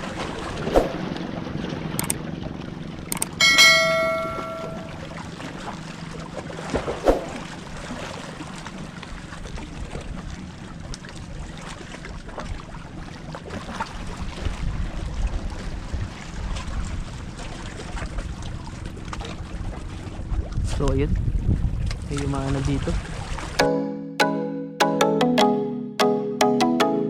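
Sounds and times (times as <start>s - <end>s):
sea waves washing: 0.0s - 9.2s
small clicks: 3.1s - 3.4s
wind buffeting microphone: 13.8s - 23.6s.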